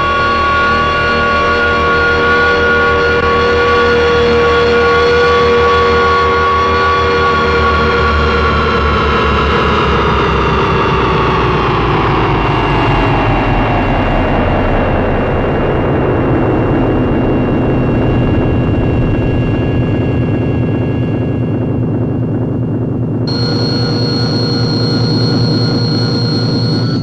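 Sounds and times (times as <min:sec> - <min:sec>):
high steady whine: 0:20.3 - 0:27.0.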